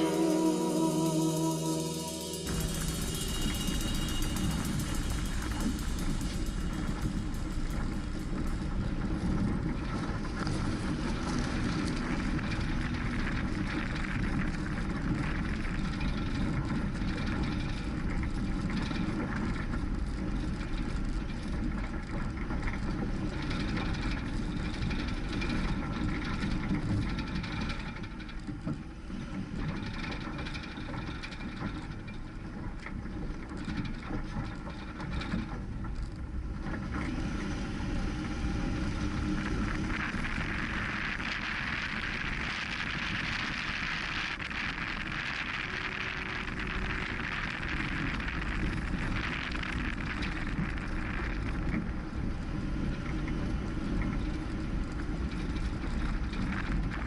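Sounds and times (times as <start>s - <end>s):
engine rumble: 0.0s - 17.0s.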